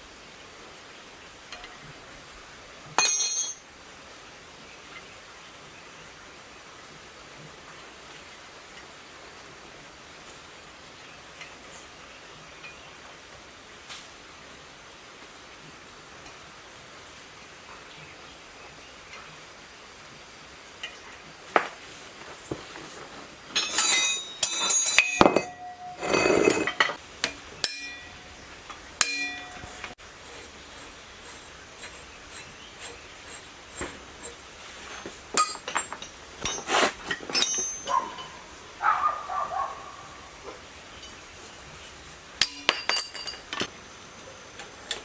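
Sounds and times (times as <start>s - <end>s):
metal tools clinking: 3.0s - 3.7s, 21.5s - 22.6s, 23.5s - 38.6s, 42.4s - 43.7s
metal scrape: 22.6s - 37.9s.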